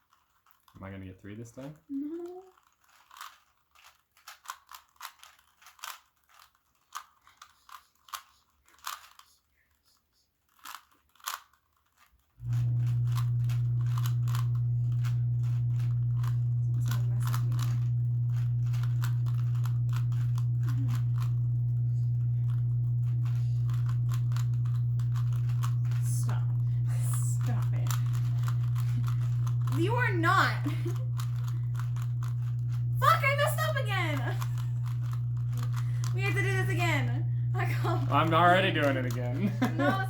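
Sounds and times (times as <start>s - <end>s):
plastic puzzle cube clicking: 2.2s - 9.8s, 10.4s - 12.3s, 23.6s - 26.0s
loud steady low hum: 12.4s - 40.0s.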